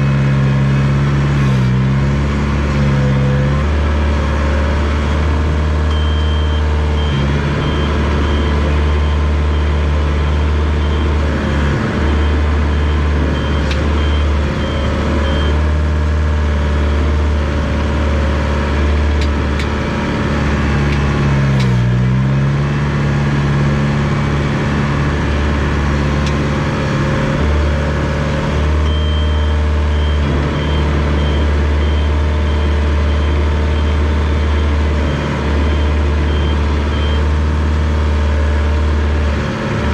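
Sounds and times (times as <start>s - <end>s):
bulldozer diesel engine running: 0.0s - 39.9s
reversing beeper: 5.9s - 15.7s, 26.4s - 37.3s.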